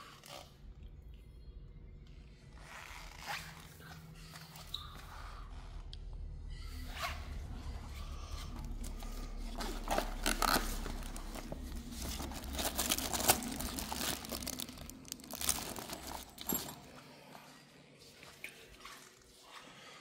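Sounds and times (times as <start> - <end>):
branches snapping and crunching: 9.6 - 16.4.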